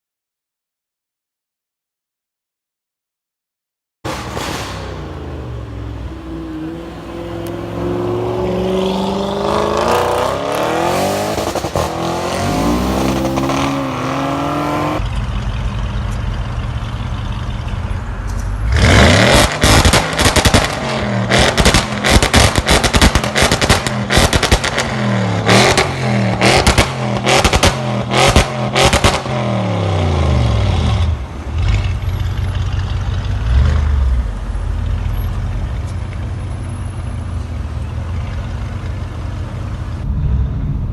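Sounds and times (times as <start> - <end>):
car engine revving: 5.0 - 15.1, 18.7 - 32.0, 40.0 - 40.9
loud car engine idling: 15.0 - 18.4
exhaust crackles and pops: 19.3 - 29.3.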